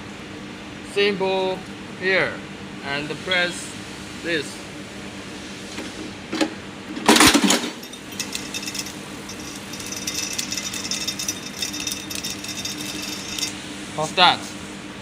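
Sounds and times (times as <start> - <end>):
motor hum: 6.9 - 14.0
machine clattering: 7.0 - 13.6.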